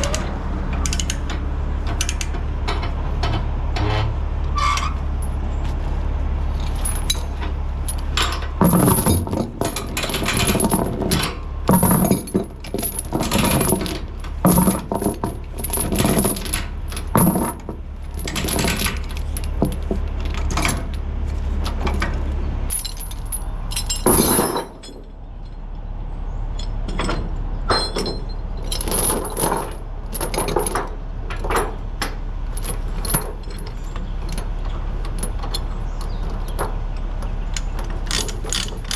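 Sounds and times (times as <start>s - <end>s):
chains clanking against metal: 6.5s - 25.7s, 26.5s - 36.8s, 37.5s - 38.9s.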